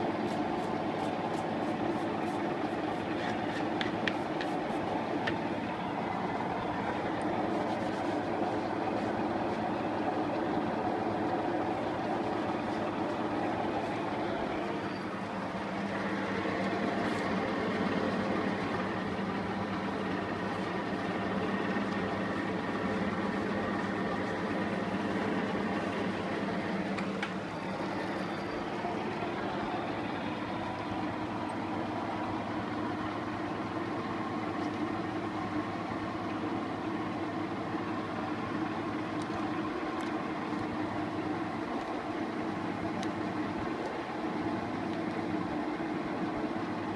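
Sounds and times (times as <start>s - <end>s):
metal lathe running: 0.0s - 44.7s.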